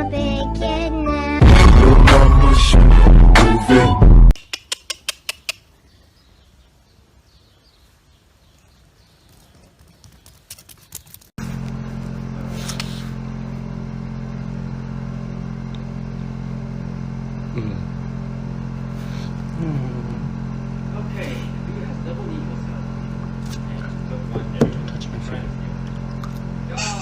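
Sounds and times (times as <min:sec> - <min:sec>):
low mechanical hum: 0:00.0 - 0:03.2, 0:05.5 - 0:27.0
sharp clicks: 0:04.4 - 0:05.7.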